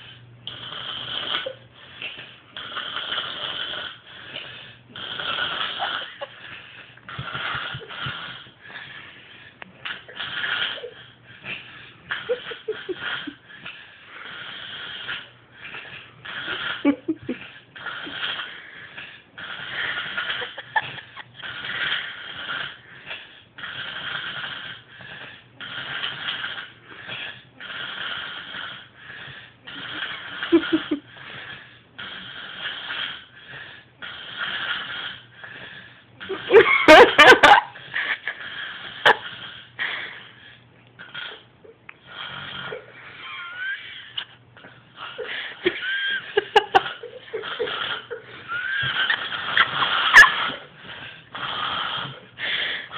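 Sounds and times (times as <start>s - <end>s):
woman snoring: 5.0s - 6.3s, 14.2s - 22.8s, 29.7s - 33.3s, 45.0s - 52.9s.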